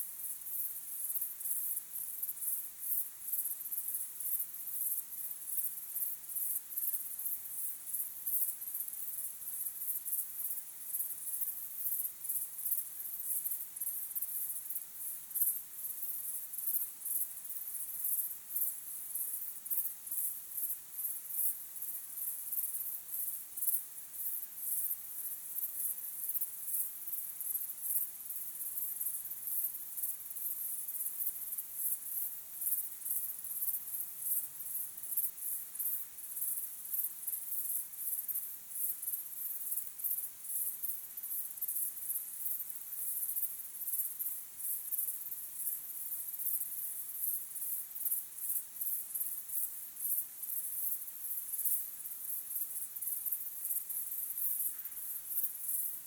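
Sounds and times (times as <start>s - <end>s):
crickets chirping: 0.0s - 56.0s.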